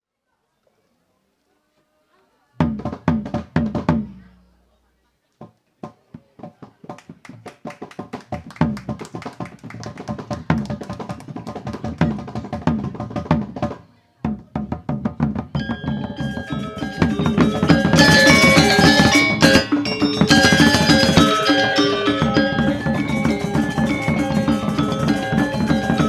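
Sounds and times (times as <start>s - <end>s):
drum strokes: 14.6s - 26.0s
gamelan ensemble playing: 15.6s - 26.0s.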